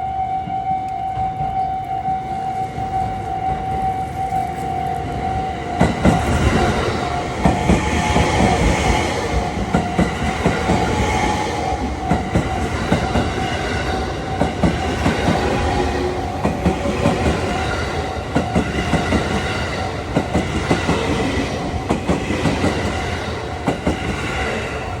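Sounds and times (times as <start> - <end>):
level crossing alarm: 0.0 - 23.8
train wheels clacking over rail joints: 5.8 - 24.8.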